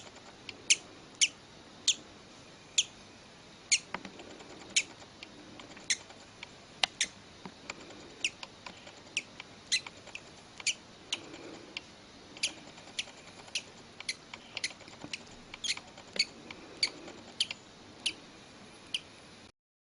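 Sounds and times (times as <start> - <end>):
bird chick peeping: 12.4 - 18.2.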